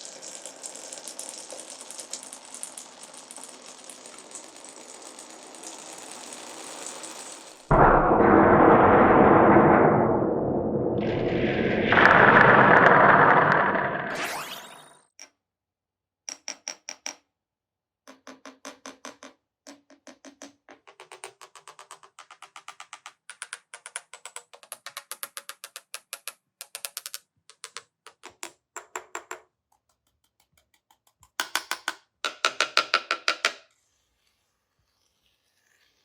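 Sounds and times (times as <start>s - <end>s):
marbles clacking on wooden tracks: 11.0s - 14.6s, 30.9s - 33.6s.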